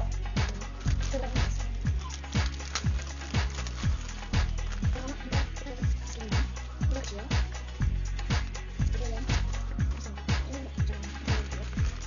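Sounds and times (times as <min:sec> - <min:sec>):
steady kick drum: 0:00.0 - 0:12.0.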